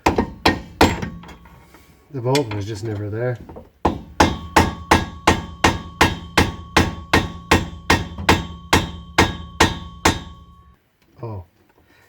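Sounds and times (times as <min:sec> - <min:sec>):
hammer striking metal: 0:00.0 - 0:01.4, 0:03.8 - 0:10.8.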